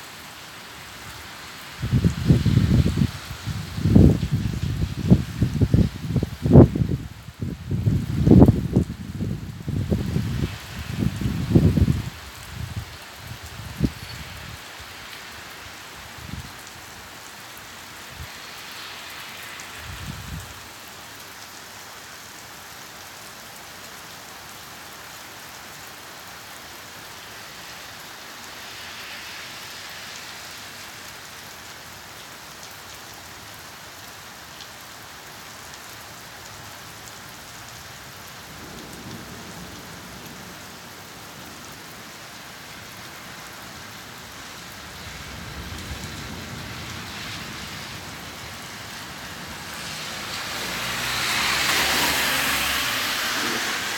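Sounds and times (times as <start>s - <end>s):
steady rain: 0.0s - 53.9s
thunder rumbling: 44.8s - 53.9s.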